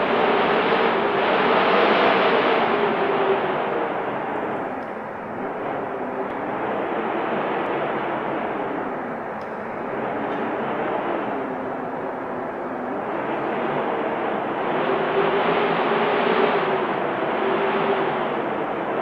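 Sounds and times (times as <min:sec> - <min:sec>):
wind blowing in gusts: 0:00.0 - 0:19.0.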